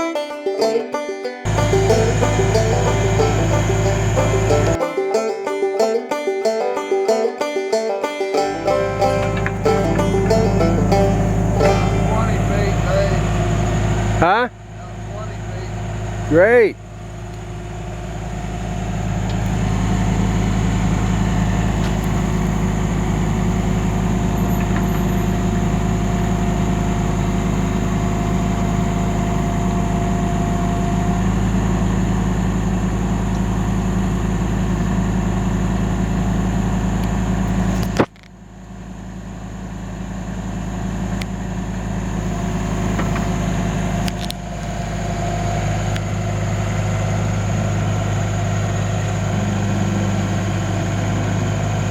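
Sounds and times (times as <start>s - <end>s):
engine humming: 0.0s - 51.9s
click: 37.0s - 38.3s, 44.0s - 44.7s.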